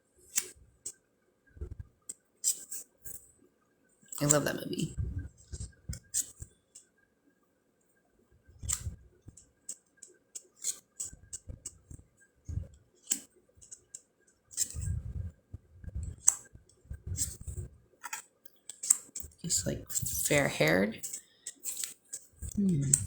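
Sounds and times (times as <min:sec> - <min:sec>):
soft low handling thuds: 0:04.9 - 0:06.1, 0:14.7 - 0:17.8.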